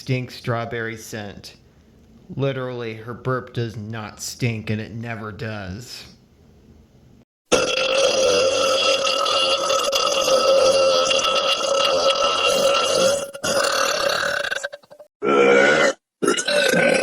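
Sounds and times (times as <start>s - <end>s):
long burp: 7.5s - 17.0s.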